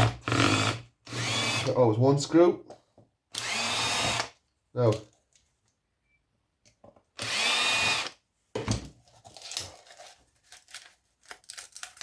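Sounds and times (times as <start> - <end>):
cordless drill whirring: 0.0 - 1.8, 3.3 - 4.4, 7.2 - 8.2.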